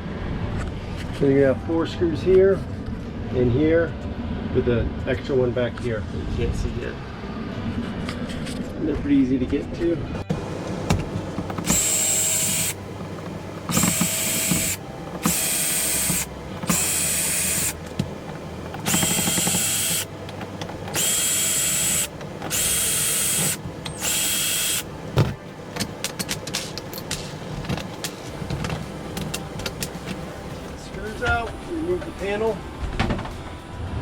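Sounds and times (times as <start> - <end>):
cordless drill running in bursts: 11.6 - 12.8, 13.7 - 17.8, 18.8 - 20.1, 20.9 - 24.9.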